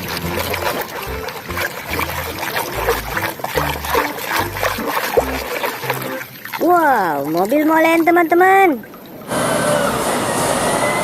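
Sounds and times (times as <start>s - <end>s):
backing music with bass line: 0.0s - 6.2s
water trickling and splashing: 0.0s - 9.3s.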